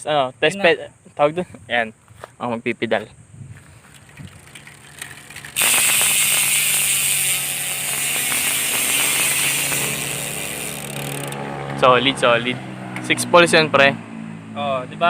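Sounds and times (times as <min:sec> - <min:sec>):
bicycle hub ratchet buzzing: 0:03.9 - 0:11.4.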